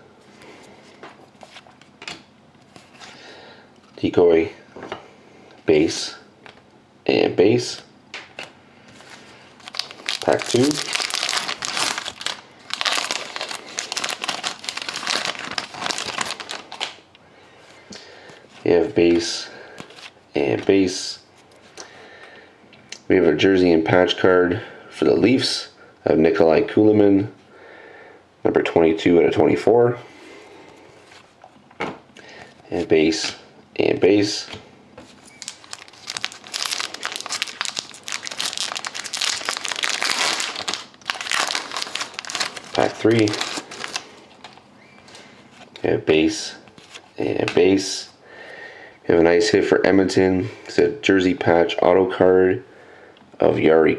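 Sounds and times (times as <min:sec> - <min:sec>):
wrapper crinkling and tearing: 0:09.0 - 0:17.0, 0:35.1 - 0:44.7.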